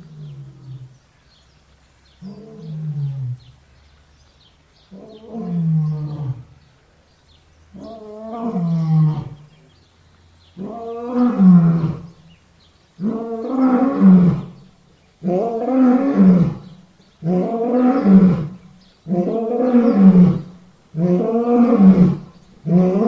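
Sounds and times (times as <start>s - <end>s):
lion roaring: 2.2s - 3.5s, 4.9s - 6.5s, 7.8s - 9.5s, 10.6s - 12.2s, 13.0s - 14.6s, 15.2s - 23.0s.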